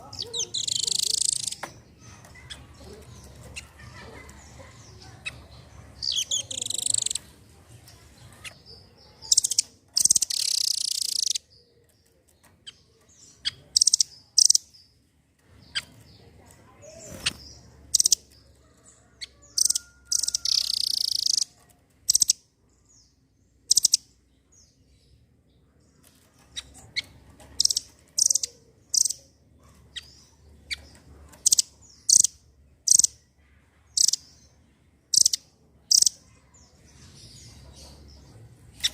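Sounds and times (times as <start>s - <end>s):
bird high sharp chips: 0.0s - 7.2s, 9.2s - 11.5s, 19.6s - 22.3s
bird harsh chattering: 0.0s - 7.3s, 8.3s - 11.5s, 12.7s - 14.7s, 16.9s - 18.4s, 19.3s - 21.5s, 23.7s - 24.1s, 26.6s - 29.3s, 30.0s - 33.2s, 34.0s - 34.3s, 35.1s - 36.3s.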